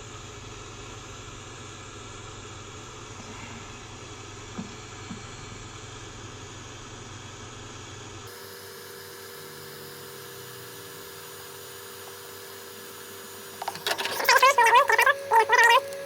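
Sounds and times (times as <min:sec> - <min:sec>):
squeaky cries: 0:13.7 - 0:16.0.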